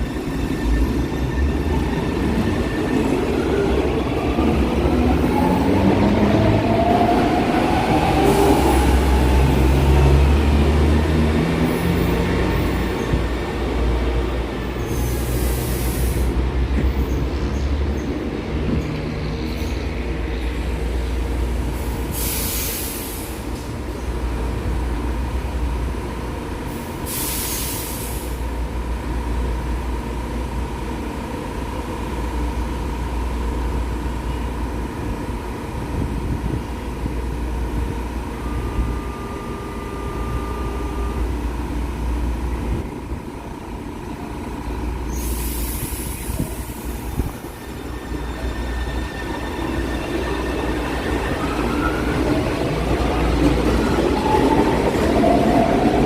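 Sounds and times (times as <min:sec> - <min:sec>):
train rumbling: 0:00.0 - 0:56.0
air hisses: 0:22.1 - 0:23.5, 0:45.1 - 0:47.4.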